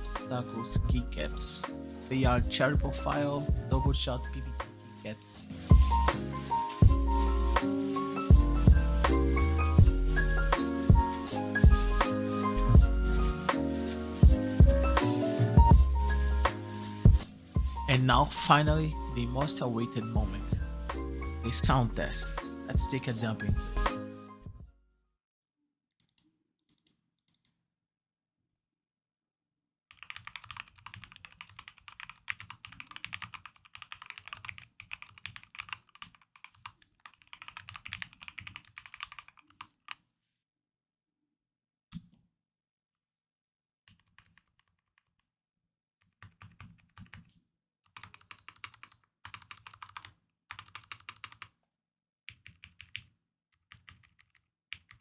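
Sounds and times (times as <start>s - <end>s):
mechanical keyboard typing: 29.9s - 39.7s, 48.0s - 51.5s, 52.3s - 53.1s, 53.7s - 55.0s.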